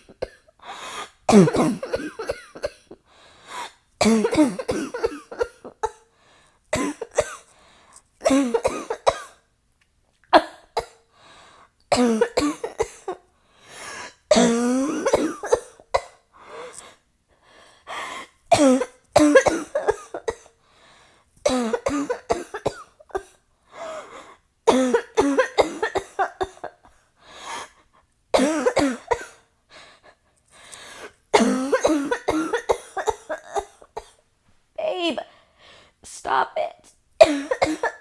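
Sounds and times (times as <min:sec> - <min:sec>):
woman coughing: 0:01.3 - 0:03.0, 0:04.0 - 0:06.0, 0:06.8 - 0:07.5, 0:08.2 - 0:09.4, 0:11.9 - 0:13.2, 0:14.3 - 0:16.2, 0:18.5 - 0:20.5, 0:21.5 - 0:23.4, 0:24.7 - 0:26.8, 0:28.4 - 0:29.4, 0:31.3 - 0:34.2, 0:37.2 - 0:38.0
short breaths: 0:03.1 - 0:03.8, 0:11.1 - 0:11.8, 0:20.6 - 0:21.3, 0:29.8 - 0:31.2.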